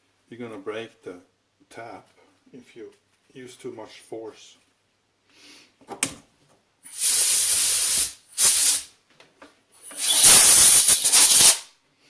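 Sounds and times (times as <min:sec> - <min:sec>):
compressed air blow gun hissing: 0:06.9 - 0:08.9, 0:09.9 - 0:11.7.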